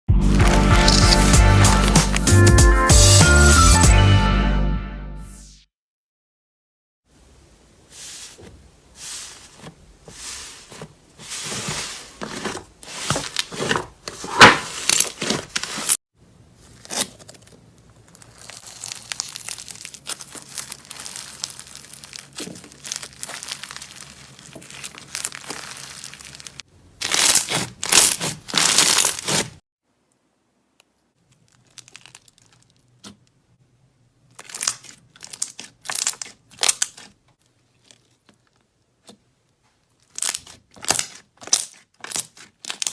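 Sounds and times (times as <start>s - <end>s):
slime squeezed by hand crackling: 16.6s - 29.6s.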